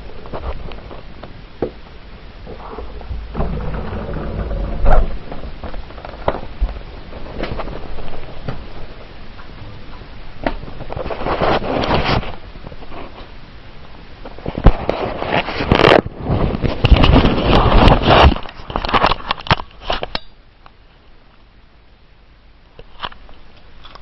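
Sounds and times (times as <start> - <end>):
clicks and knocks: 2.8 - 6.8.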